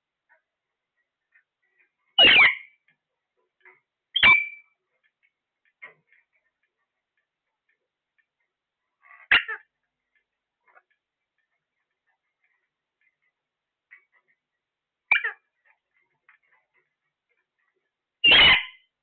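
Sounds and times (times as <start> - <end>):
parrot calling: 2.1 - 2.8, 3.6 - 4.8, 9.0 - 9.7, 15.1 - 15.8, 18.2 - 18.9.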